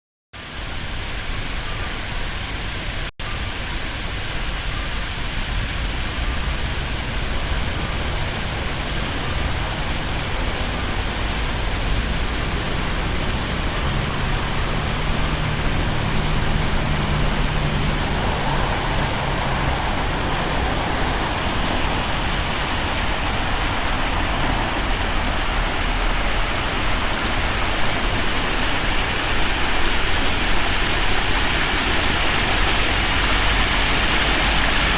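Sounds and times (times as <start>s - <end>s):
water pouring down waterfall: 0.4s - 34.9s.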